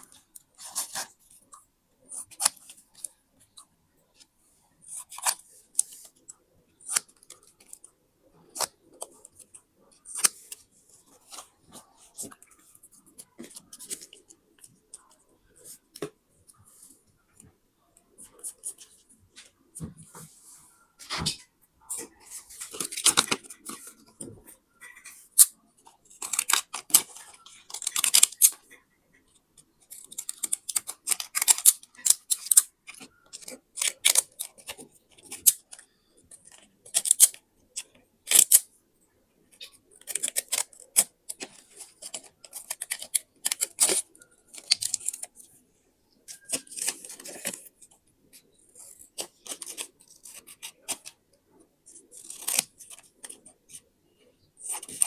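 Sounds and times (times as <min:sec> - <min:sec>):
scissors snipping paper: 0:26.1 - 0:28.6, 0:29.9 - 0:35.8, 0:36.5 - 0:38.6, 0:40.0 - 0:45.3, 0:48.8 - 0:51.2, 0:51.9 - 0:53.8.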